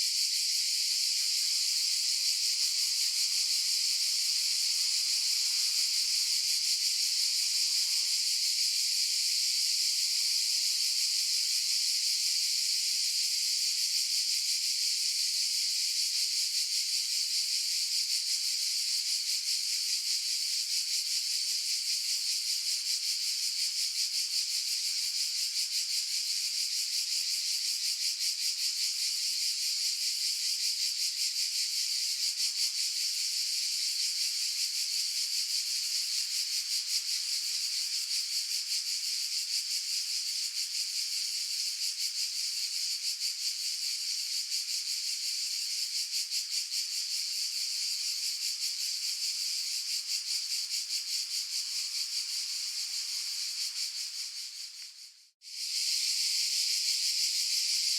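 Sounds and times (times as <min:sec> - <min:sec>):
cicadas buzzing: 0:00.0 - 0:11.4, 0:47.6 - 0:57.9.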